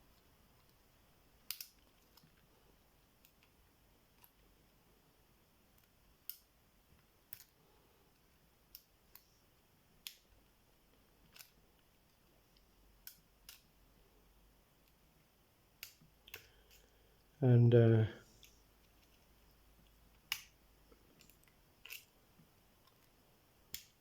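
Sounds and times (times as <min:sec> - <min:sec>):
metallic clicks of lock picking: 0:01.5 - 0:02.4.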